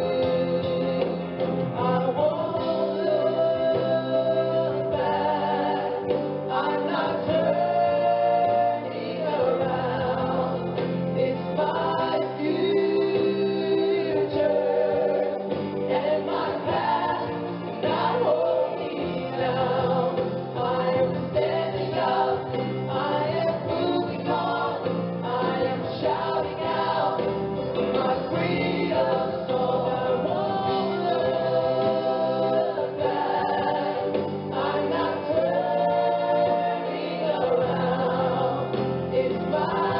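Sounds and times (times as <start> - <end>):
gospel choir singing: 0.0 - 39.9.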